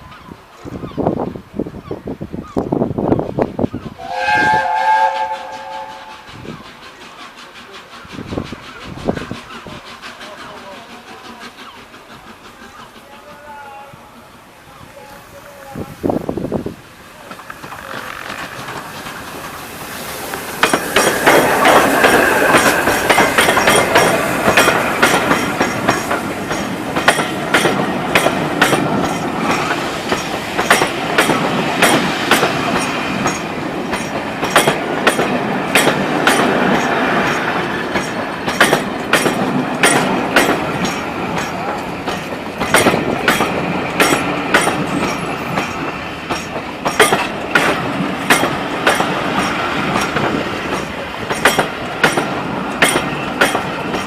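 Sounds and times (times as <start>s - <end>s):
train wheels clicking over rail joints: 3.4s - 13.5s, 16.0s - 54.0s.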